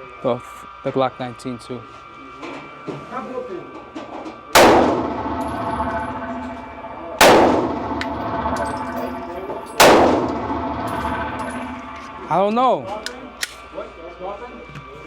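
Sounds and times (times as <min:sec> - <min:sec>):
gunshots echoing indoors: 0:04.6 - 0:12.5.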